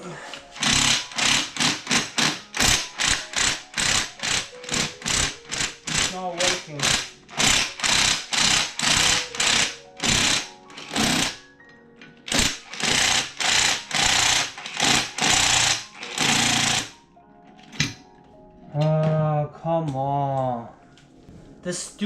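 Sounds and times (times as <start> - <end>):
impact wrench hammering: 0.6 - 11.4, 12.3 - 16.9.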